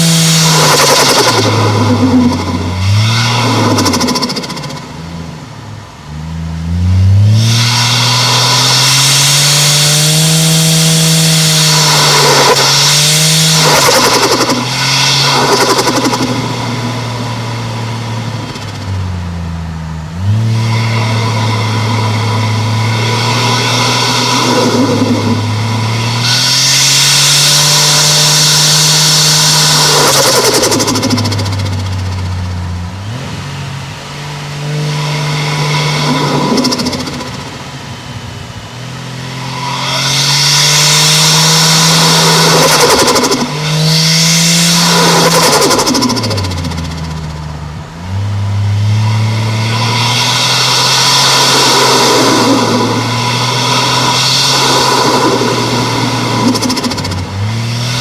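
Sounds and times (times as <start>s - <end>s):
turbo rushing hiss: 0.0s - 5.0s, 7.3s - 19.2s, 20.2s - 32.6s, 34.0s - 58.0s
car engine accelerating: 0.0s - 58.0s.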